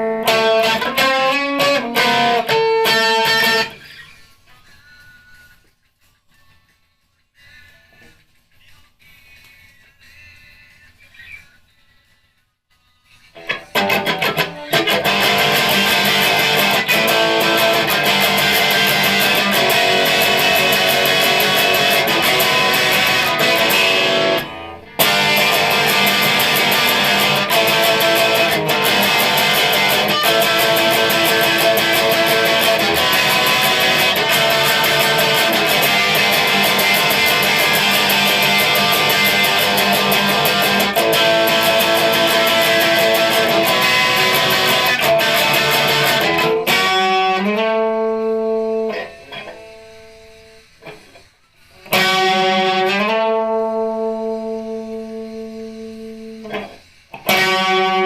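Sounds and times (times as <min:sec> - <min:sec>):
electric guitar strumming chords: 0:00.0 - 0:04.0, 0:13.3 - 0:58.0
rock band with drums: 0:13.4 - 0:48.9.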